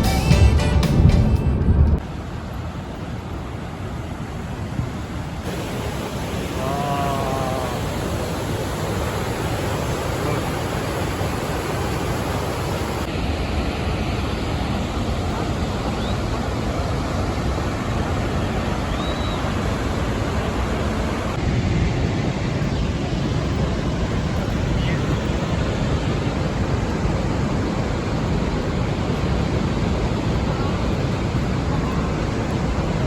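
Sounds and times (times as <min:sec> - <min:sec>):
waterfall rushing: 0:02.0 - 0:22.1.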